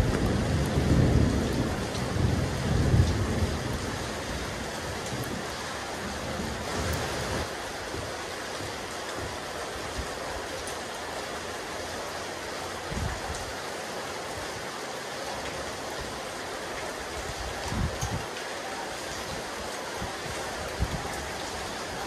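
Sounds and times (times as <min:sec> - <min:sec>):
wind buffeting microphone: 0:00.0 - 0:10.1, 0:17.3 - 0:18.3, 0:20.0 - 0:22.0
steady rain falling: 0:00.0 - 0:22.0.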